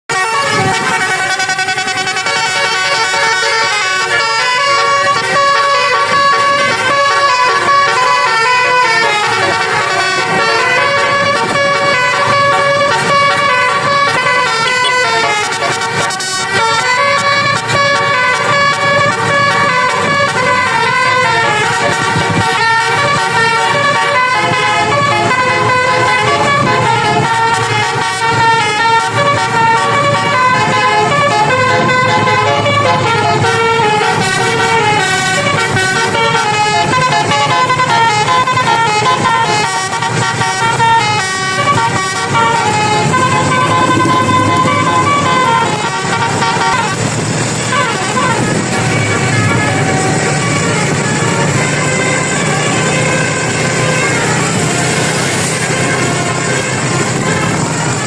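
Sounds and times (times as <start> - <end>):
multi-tone air horn melody: 0.1 - 58.0.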